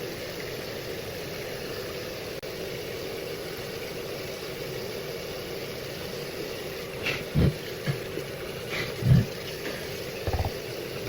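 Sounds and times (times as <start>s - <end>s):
tap water running into sink: 6.4s - 11.0s.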